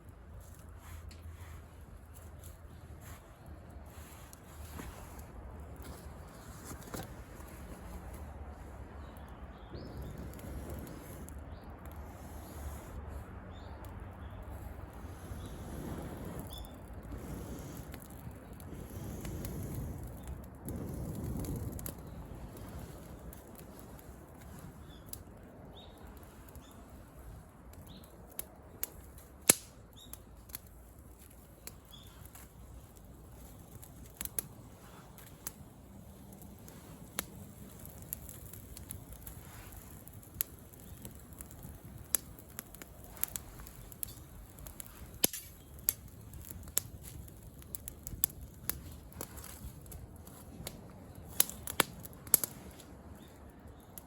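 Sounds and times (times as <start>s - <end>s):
campfire crackling and popping: 0.0s - 54.0s.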